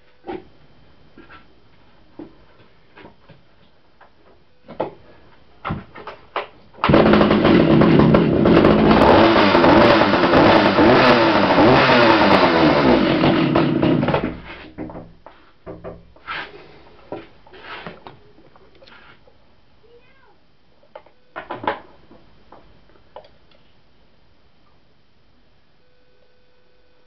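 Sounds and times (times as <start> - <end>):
chainsaw engine revving: 6.8 - 14.4.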